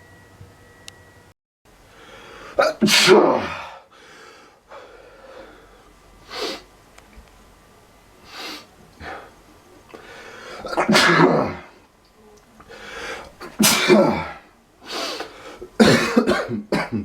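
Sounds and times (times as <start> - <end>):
person sneezing: 2.6 - 3.8, 10.5 - 11.7, 13.4 - 17.0.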